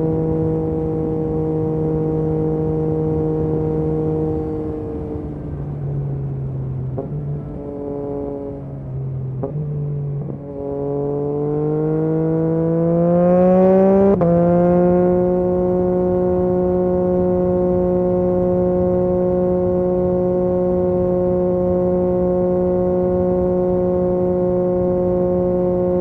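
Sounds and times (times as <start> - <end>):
motorcycle engine revving: 0.0 - 5.6, 6.9 - 26.0.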